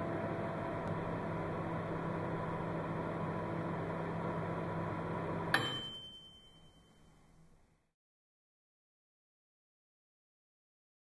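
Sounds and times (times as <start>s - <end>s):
microwave oven humming: 0.0s - 7.4s
microwave ding: 5.5s - 7.4s.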